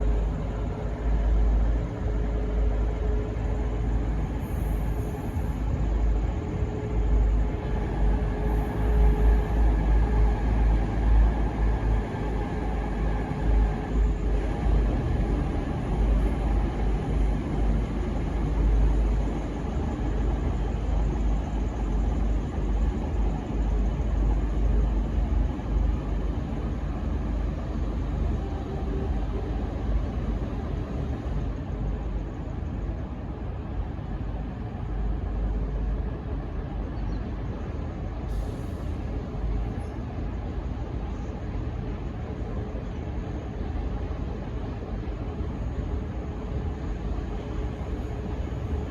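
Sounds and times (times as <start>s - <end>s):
diesel train heavy low rumble: 0.0s - 48.9s.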